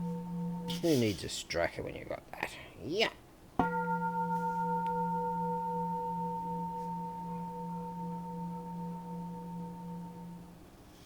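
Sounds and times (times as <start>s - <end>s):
temple bell ringing: 0.0s - 1.2s, 3.6s - 10.5s.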